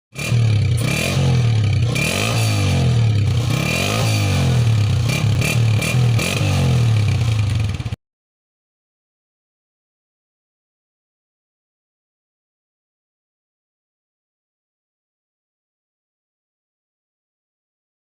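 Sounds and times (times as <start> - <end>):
motorcycle engine revving: 0.1 - 8.0.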